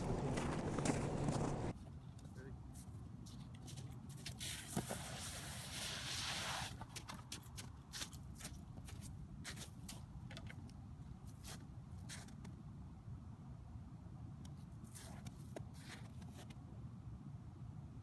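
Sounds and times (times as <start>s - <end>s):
crunches on snowy ice: 0.0s - 1.7s
low steady rumble: 0.0s - 1.7s
short scraping rush: 0.0s - 1.7s.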